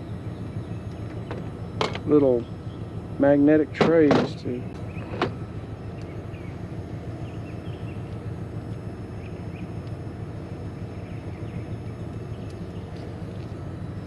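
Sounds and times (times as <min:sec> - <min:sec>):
low background rumble: 0:00.0 - 0:14.0
faint bird chirps: 0:04.6 - 0:08.4, 0:10.4 - 0:13.2.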